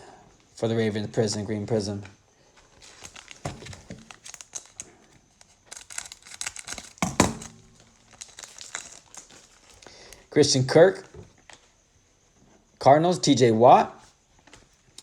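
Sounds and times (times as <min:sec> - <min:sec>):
foil wrapper crinkling: 0:02.6 - 0:11.6
cards being handled: 0:02.7 - 0:10.2.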